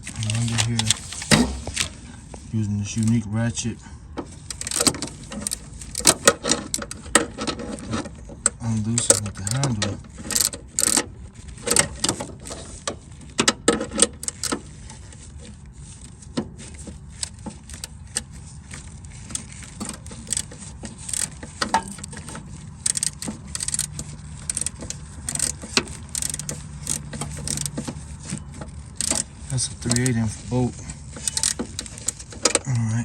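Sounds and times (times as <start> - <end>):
ratchet wrench clicking: 4.5 - 7.9, 10.2 - 11.0, 14.1 - 14.6, 17.1 - 30.4, 31.0 - 32.6.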